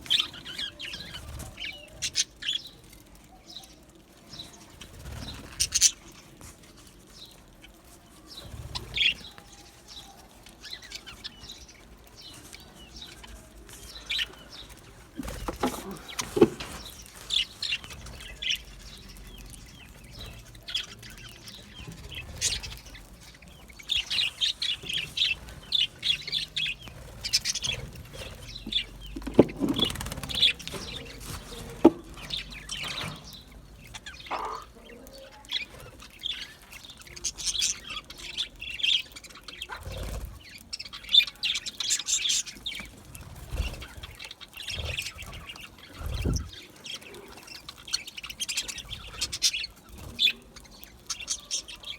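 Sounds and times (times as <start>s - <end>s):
budgerigars chirping: 14.0s - 42.9s.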